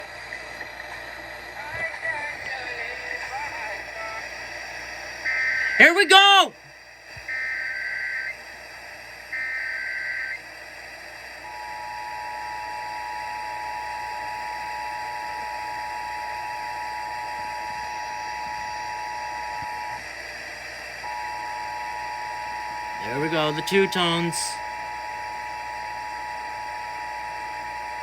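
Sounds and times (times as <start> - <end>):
radio static hiss: 1.6 - 7.5, 22.9 - 24.6.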